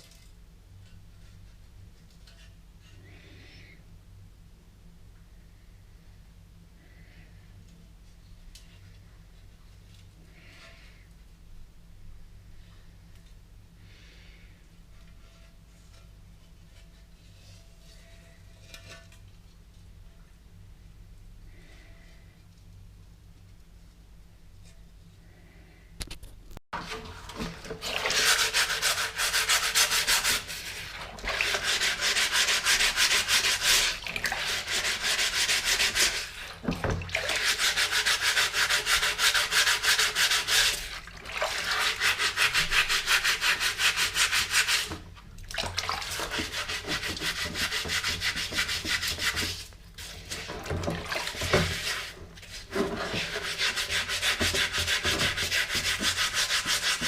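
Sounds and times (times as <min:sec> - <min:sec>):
scrubbing on steel helmet: 0:26.8 - 0:36.6.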